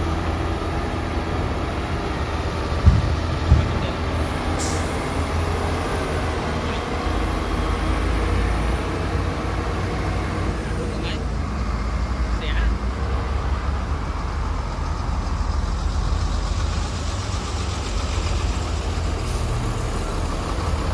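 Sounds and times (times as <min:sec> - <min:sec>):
excavator diesel engine running: 0:00.0 - 0:20.9
heavy thumps: 0:02.8 - 0:04.3.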